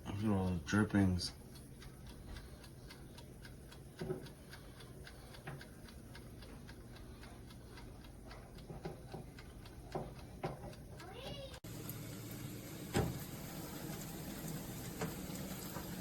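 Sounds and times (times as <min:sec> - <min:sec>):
wind-up timer ticking: 0:00.0 - 0:11.6.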